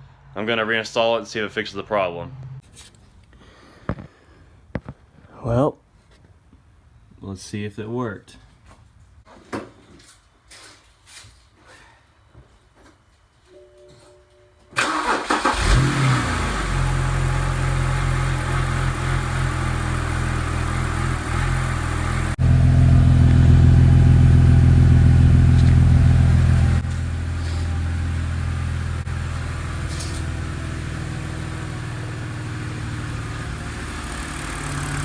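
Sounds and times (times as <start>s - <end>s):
car engine cranking and idling: 14.8s - 35.0s.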